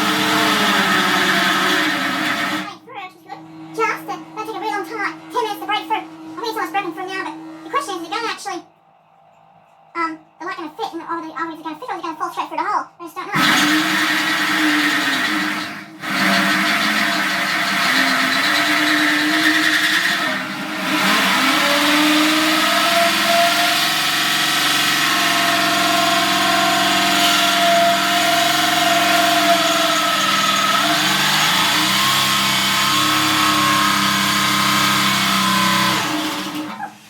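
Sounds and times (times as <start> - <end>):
electric drill cutting sheet steel: 0.0 - 2.7, 13.4 - 37.0.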